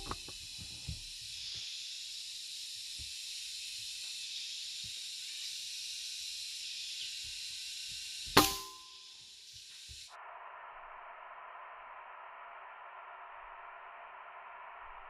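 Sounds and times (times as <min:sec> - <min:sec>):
steady high hiss: 0:00.0 - 0:15.0
sharp crack: 0:08.4 - 0:08.9.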